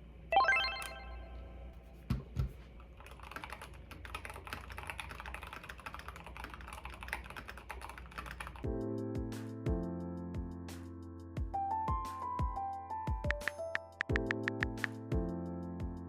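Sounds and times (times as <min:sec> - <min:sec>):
mechanical keyboard typing: 0:02.9 - 0:08.6, 0:13.3 - 0:15.0
music: 0:08.6 - 0:16.0.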